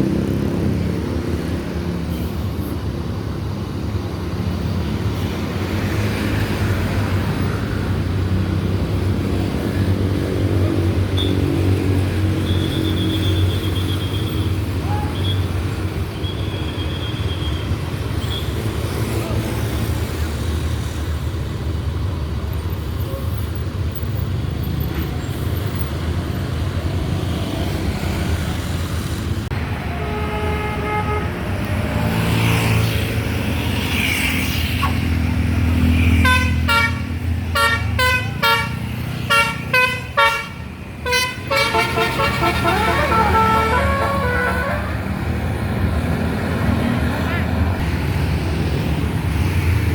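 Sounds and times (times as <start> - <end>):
musical air horn tune: 36.2 - 45.2.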